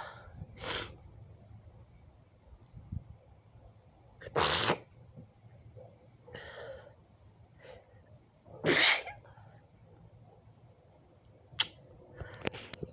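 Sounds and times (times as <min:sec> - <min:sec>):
woman sneezing: 0:08.7 - 0:09.2.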